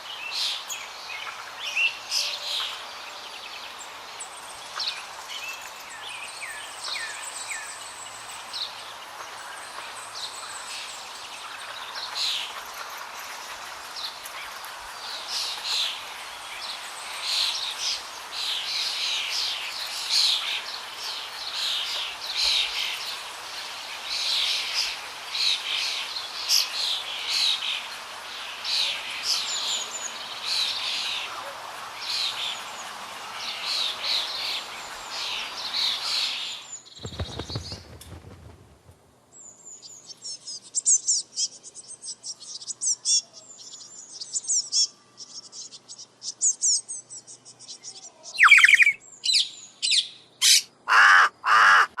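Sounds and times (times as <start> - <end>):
steady hiss: 0.0 - 42.7
birds chirping: 0.0 - 52.0
loud sweeping bird calls: 0.0 - 52.0
fast high bird twittering: 48.3 - 49.5.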